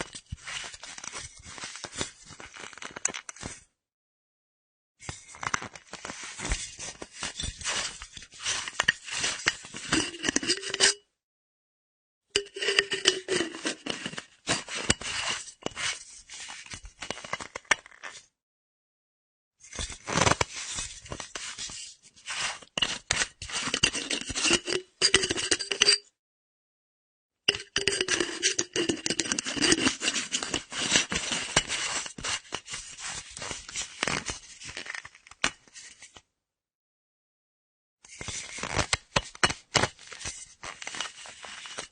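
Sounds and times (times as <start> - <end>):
metal flask cap twisting: 8.0 - 11.0, 12.4 - 15.8, 22.8 - 26.0, 27.5 - 32.4.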